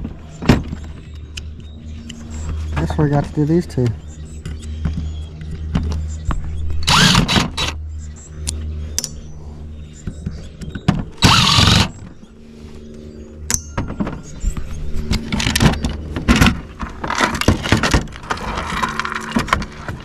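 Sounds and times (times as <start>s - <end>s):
power driver whirring: 6.8s - 7.8s, 11.2s - 12.1s.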